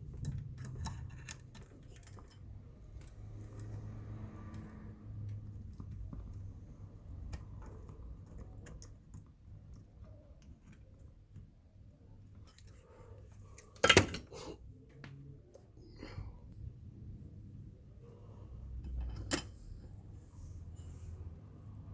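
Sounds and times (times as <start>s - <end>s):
tools clicking and clattering: 13.4s - 14.4s.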